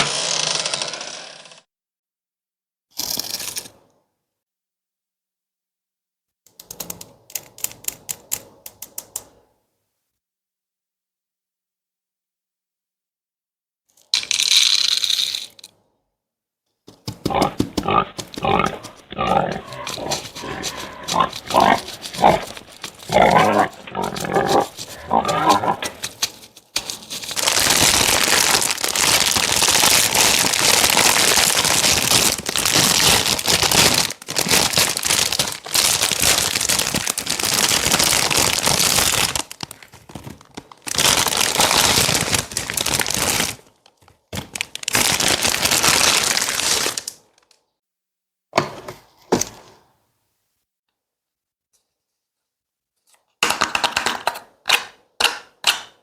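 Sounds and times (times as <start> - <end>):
pig-like animal grunts: 17.2 - 26.1
crinkling noise: 18.0 - 47.6.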